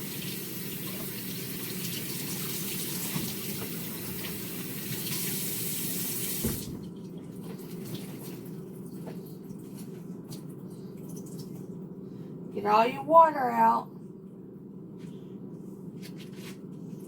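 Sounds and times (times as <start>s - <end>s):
tap water running: 0.0s - 10.4s
tap shutting off knock: 6.4s - 6.8s.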